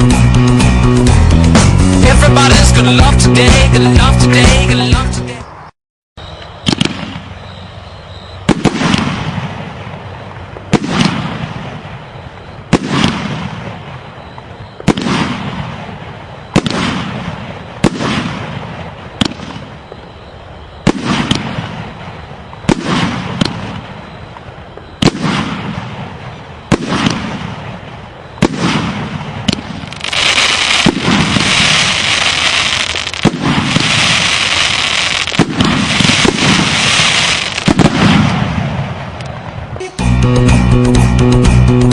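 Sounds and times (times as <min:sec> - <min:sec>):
small firework pops: 0:06.4 - 0:07.3, 0:08.4 - 0:12.1, 0:12.7 - 0:19.8, 0:20.8 - 0:39.5
fireworks banging: 0:06.4 - 0:40.2
firework crackling hiss: 0:20.9 - 0:39.6.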